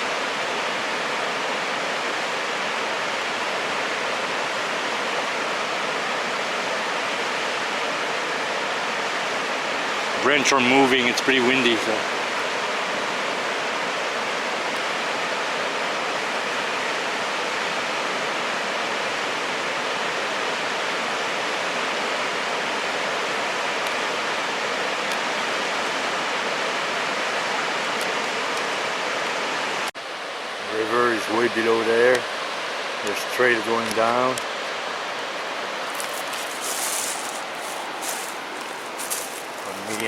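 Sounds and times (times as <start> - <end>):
steady rushing noise: 30.6 - 40.0.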